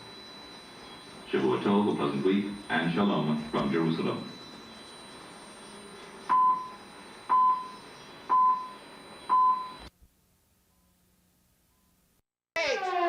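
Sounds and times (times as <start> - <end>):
radio hiss: 0.0 - 9.9.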